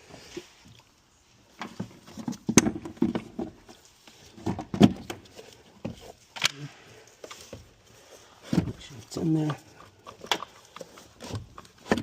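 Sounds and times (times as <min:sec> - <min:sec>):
car battery knocking and scraping: 0:08.4 - 0:12.0.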